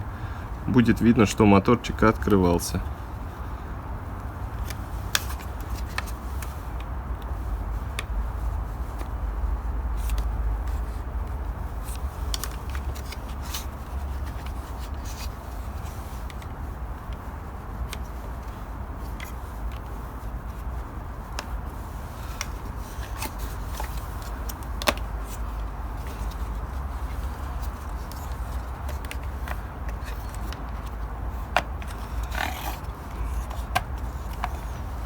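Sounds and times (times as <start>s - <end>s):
clicks and scrapes of plastic: 4.6s - 7.4s, 11.8s - 20.0s, 20.6s - 35.0s.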